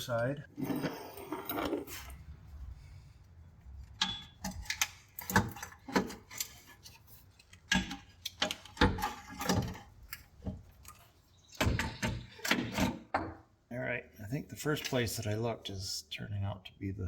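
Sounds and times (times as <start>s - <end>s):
clicks and knocks of handling: 3.8s - 13.4s.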